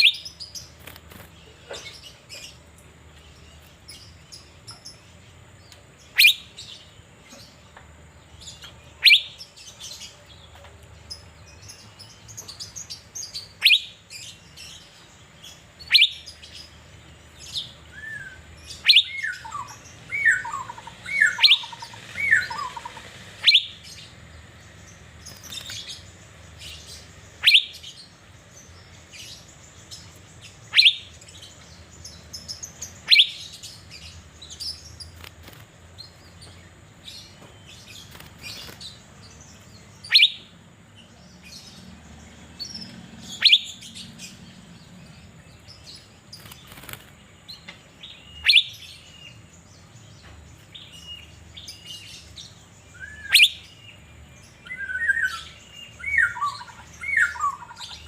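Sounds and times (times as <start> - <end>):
bird whistled notes: 6.2 - 6.5, 9.0 - 9.4, 15.9 - 16.3, 17.9 - 23.8, 27.4 - 27.8, 30.7 - 31.1, 40.0 - 40.5, 43.4 - 43.8, 48.2 - 48.8, 52.9 - 53.6
bird sharp falling calls: 17.9 - 24.0.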